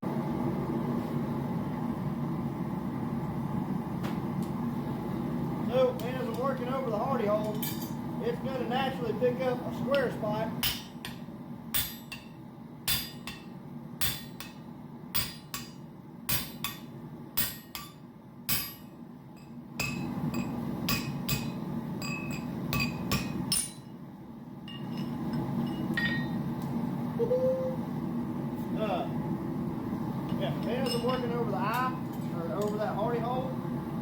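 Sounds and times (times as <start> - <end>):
steady low hum: 0.0 - 34.0
hammer ringing on hot metal: 9.9 - 24.0, 24.7 - 26.4, 30.7 - 31.8.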